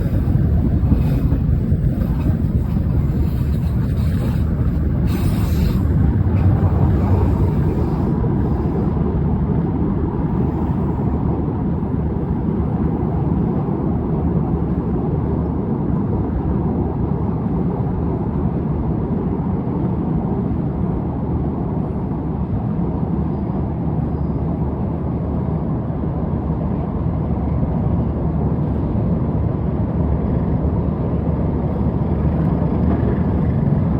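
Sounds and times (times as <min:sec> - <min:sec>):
vehicle rumble: 0:00.0 - 0:20.7, 0:30.1 - 0:33.9
wind on microphone: 0:00.0 - 0:22.2.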